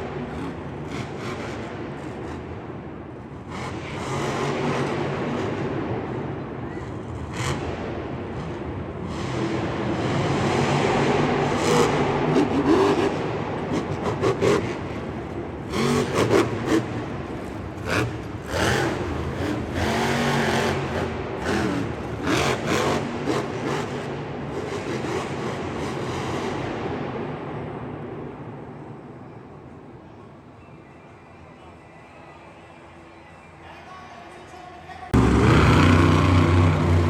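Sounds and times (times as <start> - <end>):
engine revving: 0.0 - 6.3, 7.1 - 28.4, 35.1 - 37.0.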